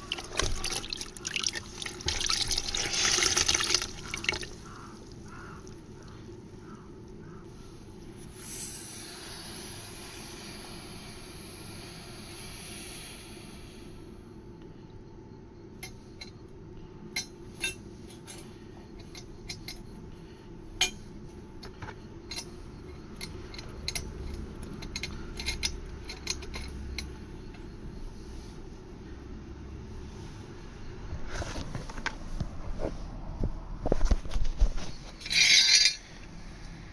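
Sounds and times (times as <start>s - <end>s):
rushing hiss: 8.3s - 14.0s
metal tools clicking and clinking: 22.3s - 27.2s, 35.2s - 36.1s.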